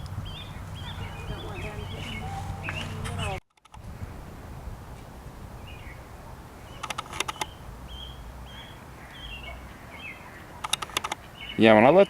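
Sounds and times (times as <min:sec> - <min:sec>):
high bird chirps: 0:00.0 - 0:03.4, 0:05.6 - 0:12.0
low outdoor rumble: 0:00.0 - 0:11.6
sharp clicks: 0:03.5 - 0:03.8, 0:06.8 - 0:07.6, 0:10.6 - 0:11.3.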